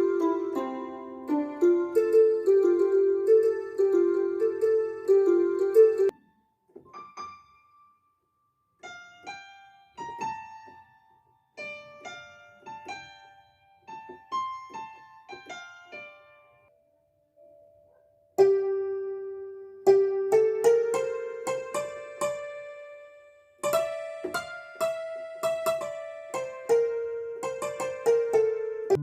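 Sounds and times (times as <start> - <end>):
keyboard playing slow melody: 0.0 - 6.2, 17.4 - 29.0
low held keyboard notes: 27.4 - 29.0.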